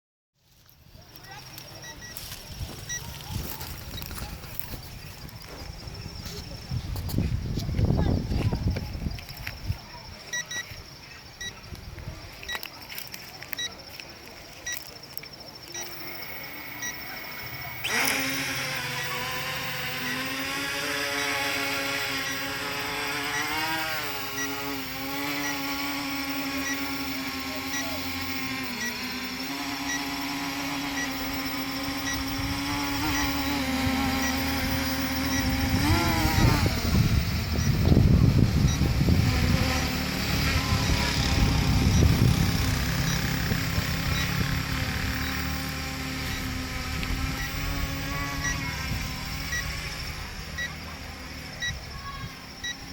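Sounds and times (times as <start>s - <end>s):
steady high-pitched whine: 0.4s - 52.9s
short electronic beeps: 1.2s - 4.7s, 10.2s - 11.8s, 14.6s - 39.0s, 39.7s - 46.6s, 47.3s - 52.9s
wind rumbling on microphone: 1.9s - 10.3s, 31.8s - 45.4s, 46.0s - 50.6s.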